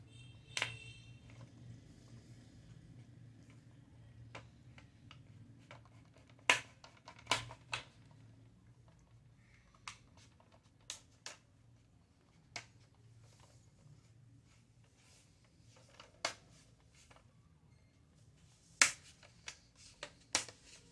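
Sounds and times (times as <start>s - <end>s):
plastic parts clicking: 4.3s - 8.2s.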